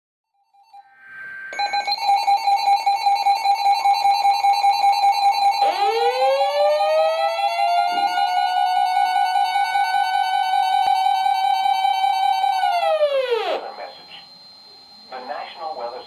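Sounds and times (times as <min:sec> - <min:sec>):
tone sweeping up in pitch: 0:00.6 - 0:02.7, 0:03.4 - 0:13.7
two-tone attention signal: 0:00.6 - 0:16.0.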